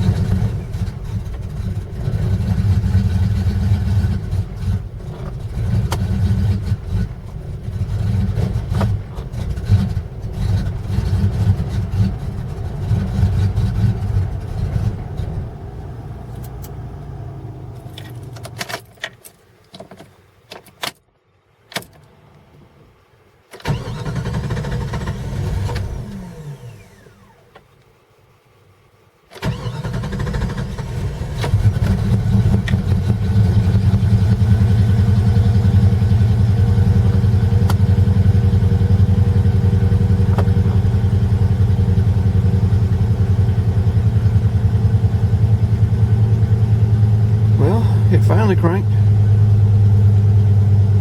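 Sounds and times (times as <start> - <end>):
car engine starting and idling: 0.0 - 51.0.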